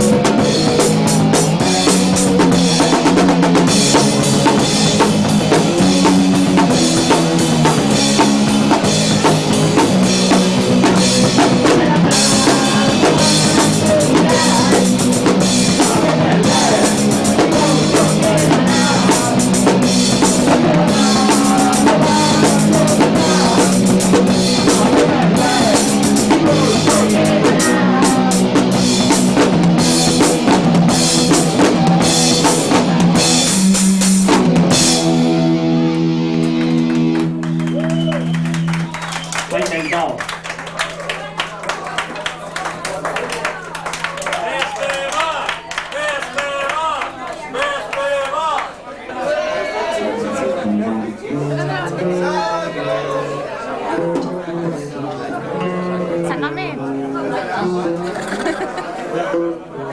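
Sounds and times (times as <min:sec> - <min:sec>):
drum kit hits: 0:00.0 - 0:37.6
punk rock band playing live: 0:00.0 - 0:44.9.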